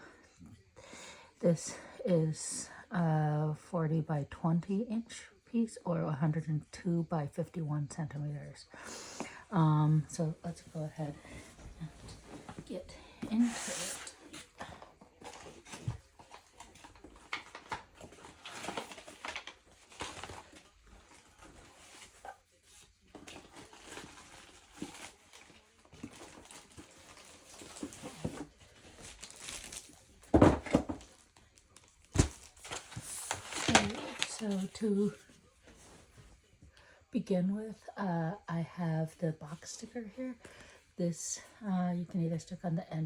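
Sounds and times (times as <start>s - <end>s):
packaging rustling and crinkling: 11.3s - 36.2s.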